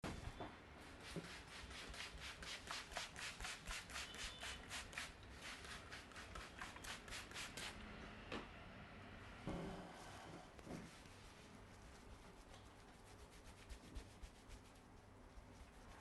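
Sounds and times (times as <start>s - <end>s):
hands rubbing hair and scalp: 1.0s - 7.8s, 10.6s - 16.0s.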